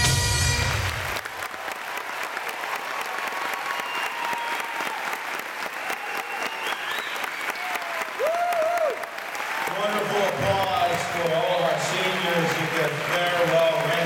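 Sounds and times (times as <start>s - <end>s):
bagpipes: 0.0s - 0.9s
audience applauding and cheering: 0.0s - 14.0s.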